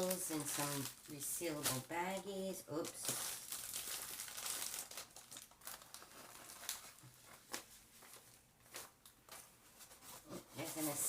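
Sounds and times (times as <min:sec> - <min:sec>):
plastic bags crinkling: 0:00.0 - 0:11.0.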